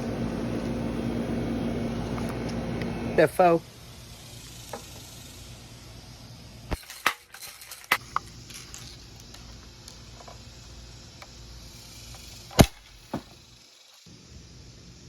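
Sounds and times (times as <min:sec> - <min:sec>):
bb gun crack on can: 0:12.5 - 0:13.2.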